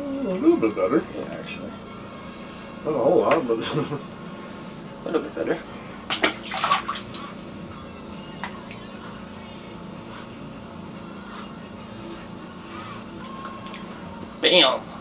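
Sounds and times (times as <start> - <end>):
person's voice: 0.0 - 1.9
steady low hum: 0.0 - 15.0.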